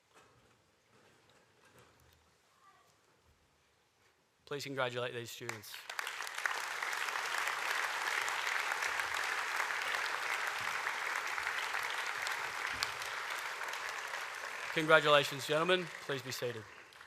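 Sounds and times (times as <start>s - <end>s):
audience applauding: 5.5s - 17.0s.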